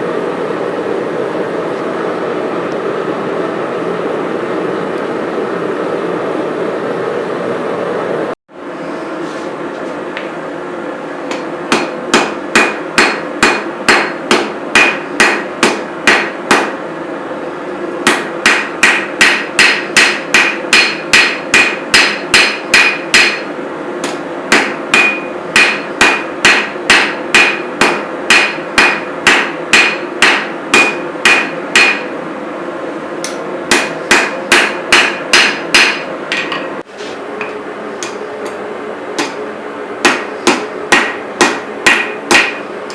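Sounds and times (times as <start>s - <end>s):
steady rushing noise: 0.0s - 8.4s
hammer striking steel on anvil: 11.3s - 16.8s, 18.0s - 32.1s, 33.2s - 36.7s, 39.2s - 39.4s, 40.0s - 42.9s.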